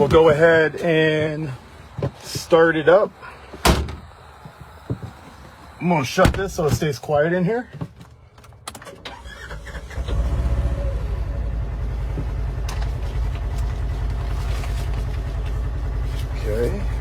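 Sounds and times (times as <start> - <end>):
engine starting and idling: 8.7 - 17.0.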